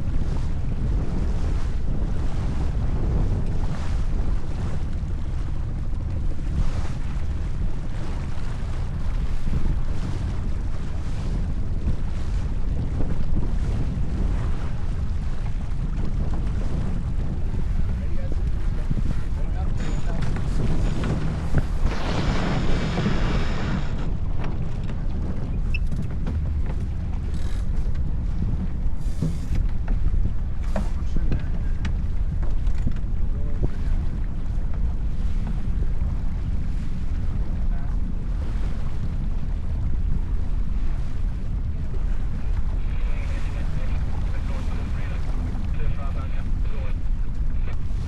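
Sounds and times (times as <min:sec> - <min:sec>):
water rushing along hull: 0:00.0 - 0:48.0
wind buffeting microphone: 0:00.0 - 0:48.0.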